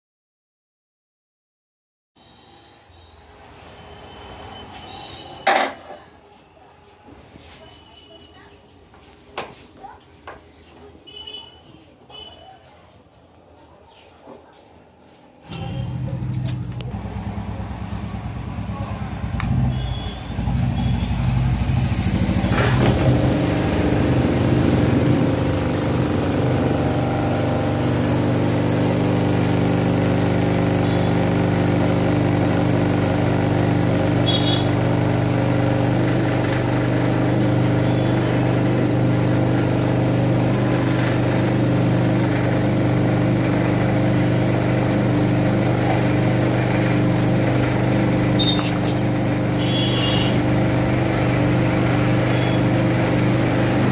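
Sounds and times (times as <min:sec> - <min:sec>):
sewing machine running: 0:20.8 - 0:53.9.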